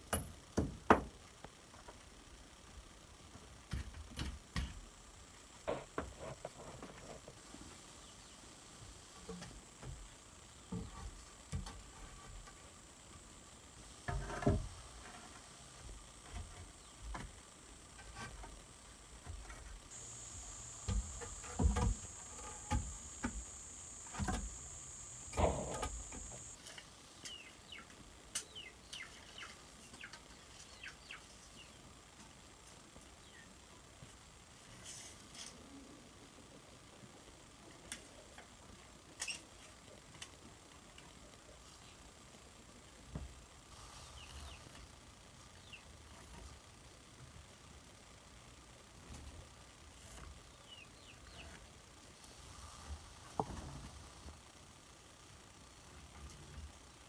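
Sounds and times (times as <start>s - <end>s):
knocks and thuds of building work: 0.1s - 1.2s, 14.0s - 14.8s, 18.0s - 26.6s
high-pitched whine: 12.0s - 26.6s.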